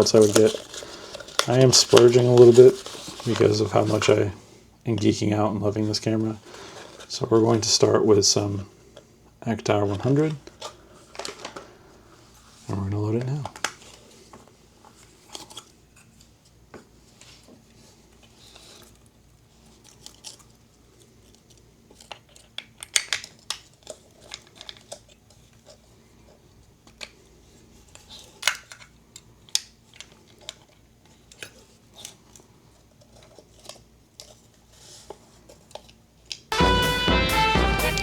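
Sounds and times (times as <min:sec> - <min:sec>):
music: 0:36.5 - 0:38.0.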